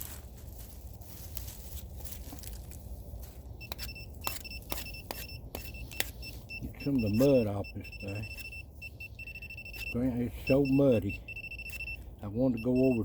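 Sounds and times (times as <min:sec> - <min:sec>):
digging in rocky ground: 0:00.0 - 0:13.0
metal detector beeping: 0:03.6 - 0:13.0.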